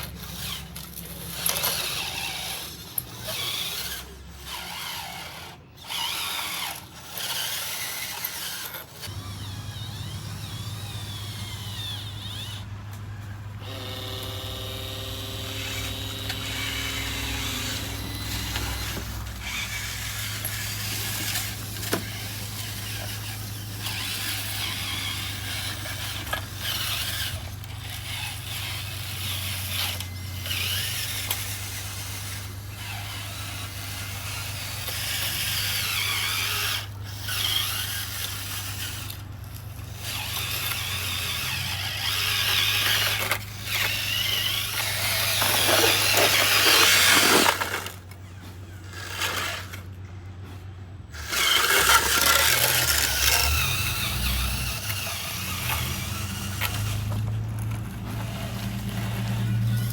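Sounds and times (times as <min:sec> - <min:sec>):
high motor whine: 0:00.0 - 0:59.9
small electric motors running: 0:00.0 - 0:59.9
steady low motor hum: 0:00.0 - 0:59.9
scraping and rustling: 0:34.1 - 0:59.9.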